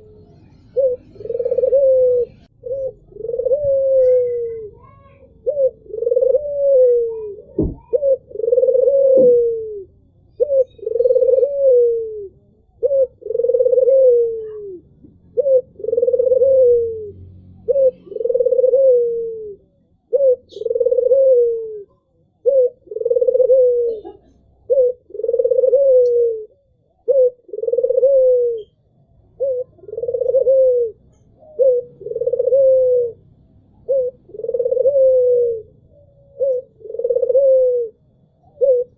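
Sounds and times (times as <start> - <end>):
dove cooing: 0.0 - 38.9
sharp knock: 7.6 - 7.9.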